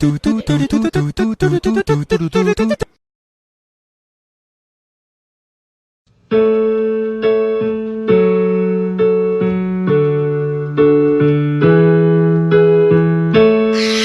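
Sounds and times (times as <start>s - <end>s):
electric keyboard playing chords: 0.0s - 3.0s, 6.3s - 14.0s.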